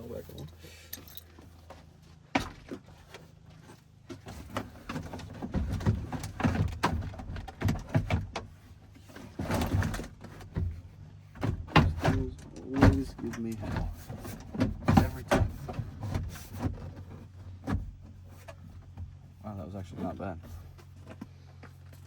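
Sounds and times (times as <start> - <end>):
plastic panel knocking and creaking: 4.2 - 8.6, 9.3 - 19.2.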